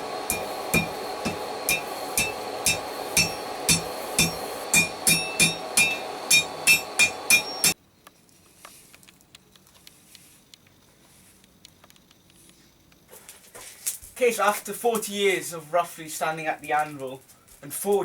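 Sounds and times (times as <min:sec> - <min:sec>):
hammer striking steel on anvil: 0:00.0 - 0:07.8.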